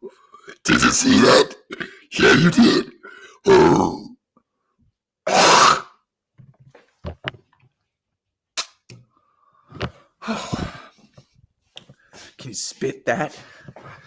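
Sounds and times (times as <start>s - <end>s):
loud burp: 0.0s - 4.2s, 5.3s - 6.0s.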